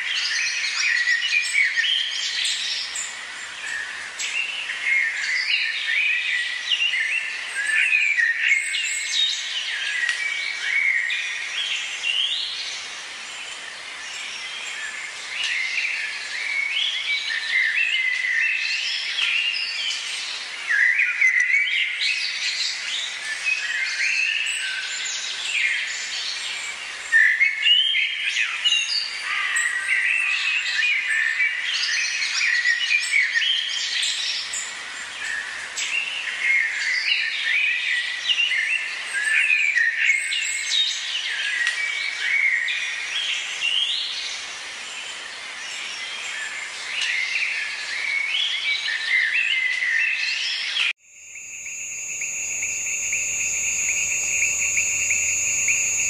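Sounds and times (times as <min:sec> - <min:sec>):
high insect trill: 0:51.0 - 0:56.0.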